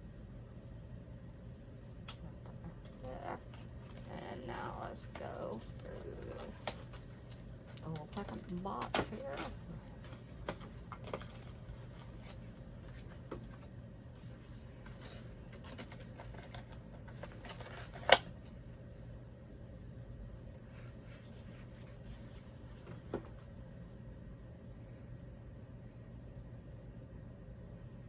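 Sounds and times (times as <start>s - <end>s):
plastic packaging rustling and clicking: 2.8s - 18.6s.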